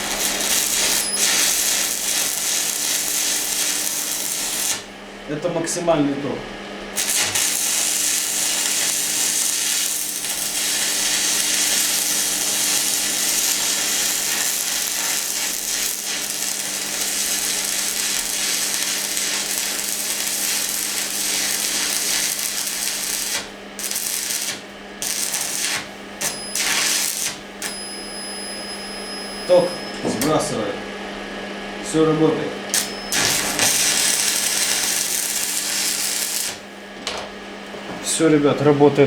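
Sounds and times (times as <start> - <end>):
welding arc crackling: 0.0 - 5.0, 6.9 - 29.8, 32.7 - 37.2
faint steady hum: 26.2 - 30.8.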